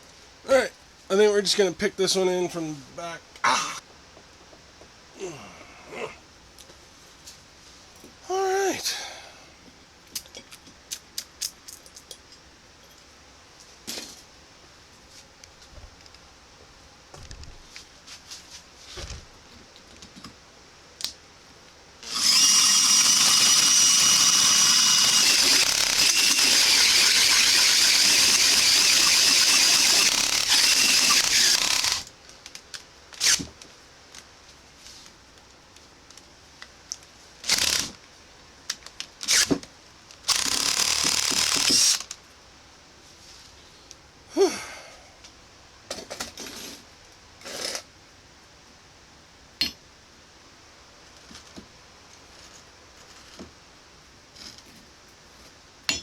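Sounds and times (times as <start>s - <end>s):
drill screeching through steel: 22.0s - 32.0s, 40.3s - 42.1s.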